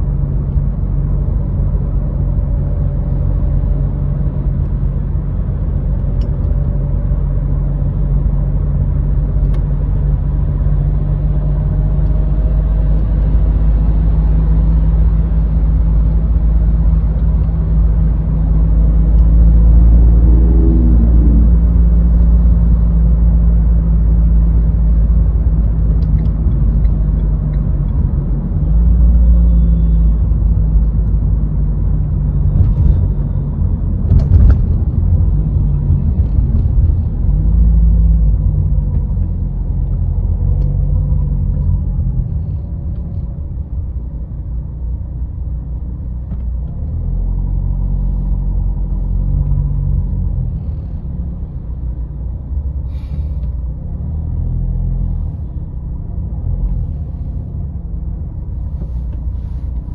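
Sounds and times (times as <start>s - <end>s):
car engine hum: 0.0s - 59.9s
road rumble: 0.0s - 59.9s.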